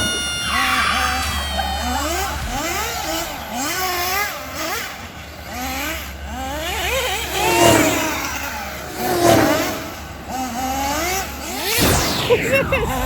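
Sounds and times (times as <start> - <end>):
toy car motor whining: 0.0 - 11.8
rushing sound: 11.5 - 13.0.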